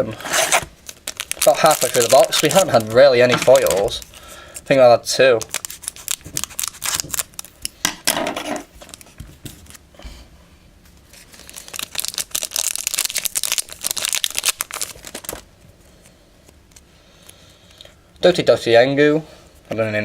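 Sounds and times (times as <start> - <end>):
foil wrapper crinkling: 0.2 - 7.8, 11.1 - 17.8.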